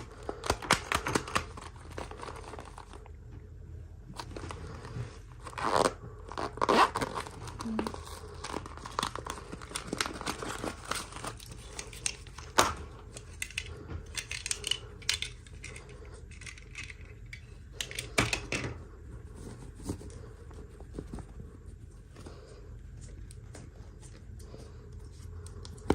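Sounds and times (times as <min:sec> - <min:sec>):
packaging crinkling and tearing: 0:00.0 - 0:03.1, 0:04.2 - 0:15.5.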